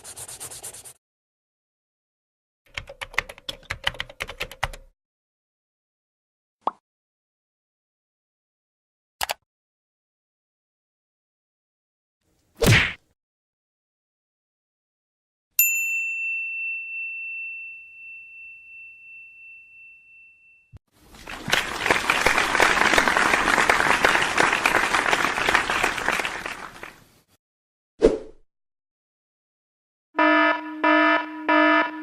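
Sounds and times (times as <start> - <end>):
bright bell ding: 15.6 - 20.7
applause: 21.0 - 27.1.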